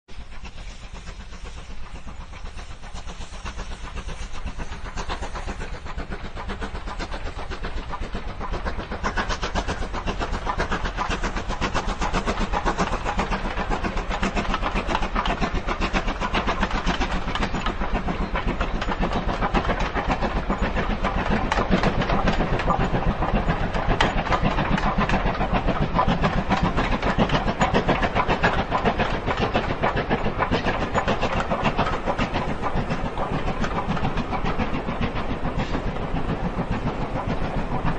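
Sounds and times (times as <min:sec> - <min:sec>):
steam hissing: 0:00.1 - 0:37.9
steam train chuffing: 0:00.1 - 0:37.9
wheel clatter: 0:00.2 - 0:37.9.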